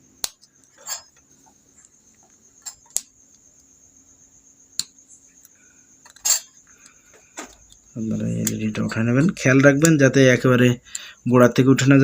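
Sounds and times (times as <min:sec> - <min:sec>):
steady high-pitched whine: 0:00.0 - 0:12.0
small sharp clicks and taps: 0:00.2 - 0:00.7.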